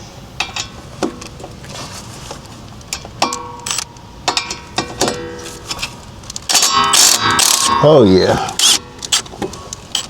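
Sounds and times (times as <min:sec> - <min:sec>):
metal tools clinking: 0:02.9 - 0:09.3.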